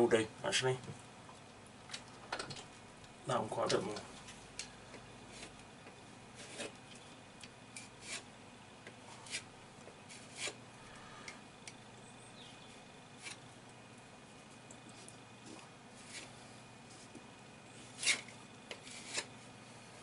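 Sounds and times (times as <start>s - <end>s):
filling knife scraping: 7.8s - 8.3s, 17.8s - 19.3s.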